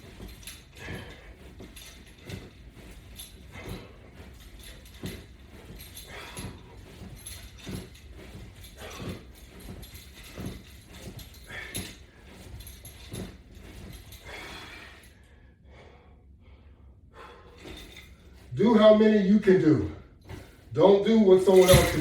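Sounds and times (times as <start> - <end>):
man's short forceful breaths: 0.8 - 1.6, 11.5 - 12.0, 14.2 - 17.9.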